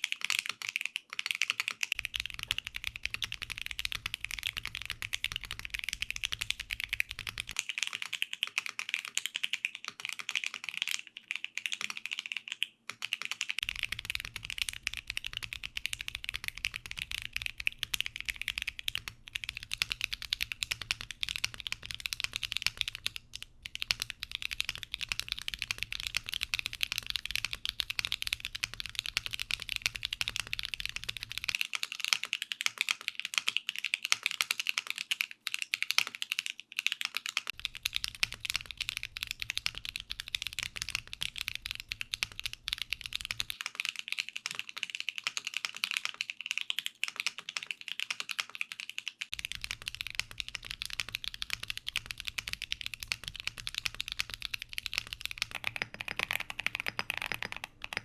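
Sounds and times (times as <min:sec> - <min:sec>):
typing on mechanical keyboard: 0:00.0 - 0:58.0.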